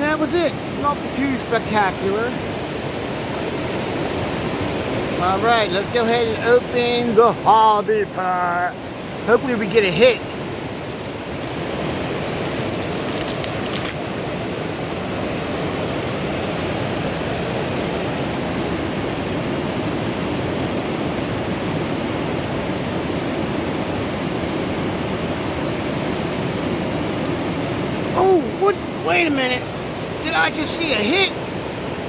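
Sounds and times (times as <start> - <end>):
waterfall rushing: 0.0 - 10.9
faint crackles: 4.7 - 6.5, 9.4 - 15.3.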